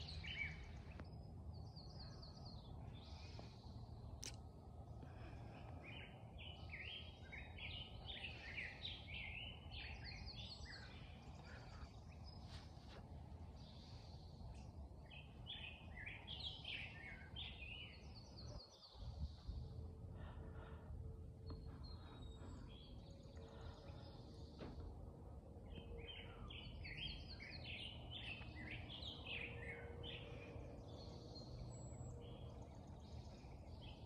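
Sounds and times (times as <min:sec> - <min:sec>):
low background rumble: 0:00.0 - 0:34.0
songbird chirping: 0:00.0 - 0:34.0.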